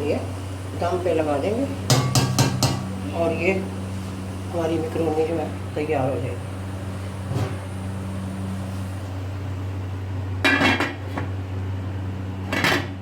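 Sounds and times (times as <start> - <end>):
steady low hum: 0.0 - 13.0
pot and lid clinking: 1.9 - 2.9.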